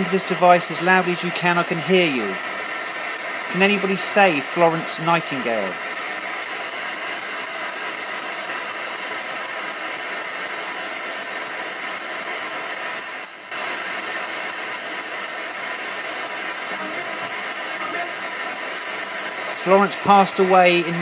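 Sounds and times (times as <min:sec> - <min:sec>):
radio static hiss: 0:00.0 - 0:21.0.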